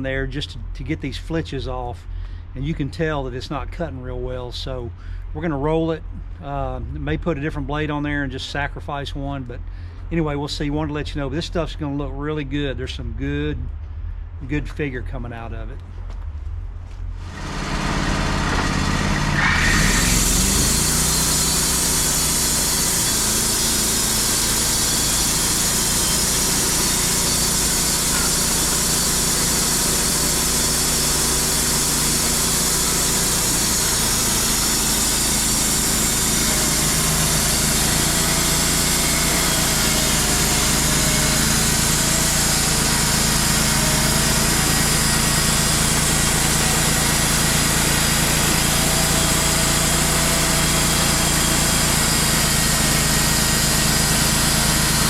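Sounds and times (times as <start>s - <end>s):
sawmill engine running: 17.2s - 55.0s.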